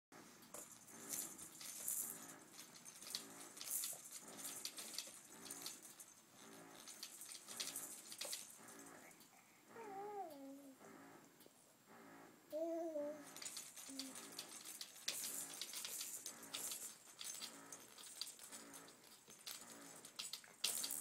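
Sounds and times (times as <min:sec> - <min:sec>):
baby cooing: 0:09.0 - 0:10.8, 0:12.5 - 0:13.3
baby grunting: 0:09.0 - 0:10.8.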